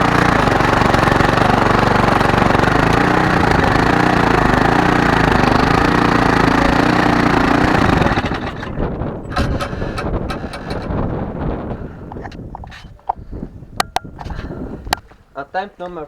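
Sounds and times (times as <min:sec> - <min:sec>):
lawnmower engine running: 0:00.0 - 0:12.0.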